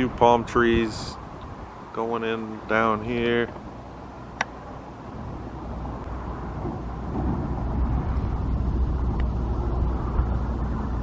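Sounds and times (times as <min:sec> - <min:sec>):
passing motor vehicle rumble: 0:02.6 - 0:11.0.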